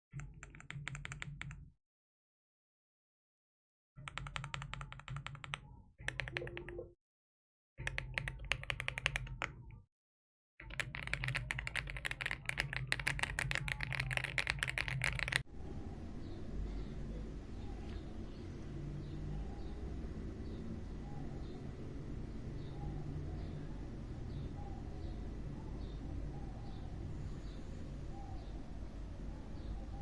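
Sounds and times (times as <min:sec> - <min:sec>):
mechanical keyboard key clacks: 0:07.8 - 0:09.6, 0:10.6 - 0:15.4.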